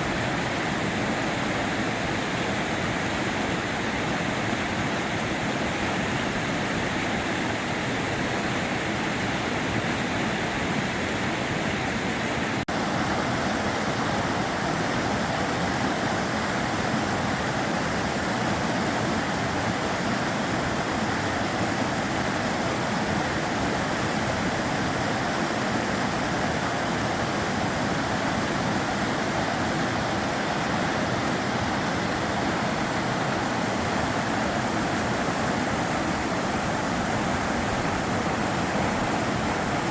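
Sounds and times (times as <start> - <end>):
river flowing: 0.0 - 39.9.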